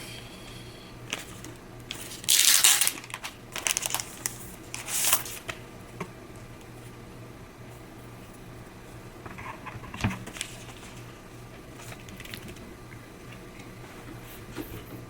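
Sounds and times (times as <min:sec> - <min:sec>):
packaging rustling and sliding: 0:01.1 - 0:05.5.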